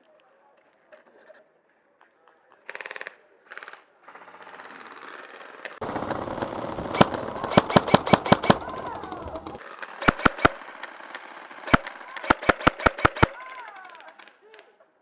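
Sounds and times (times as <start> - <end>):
airsoft guns firing: 5.8 - 9.6.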